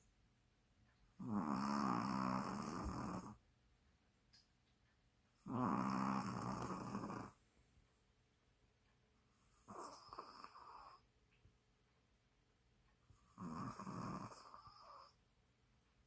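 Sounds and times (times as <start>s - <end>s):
dog snoring: 1.2s - 3.4s, 5.4s - 7.4s, 9.4s - 11.1s, 13.2s - 15.2s.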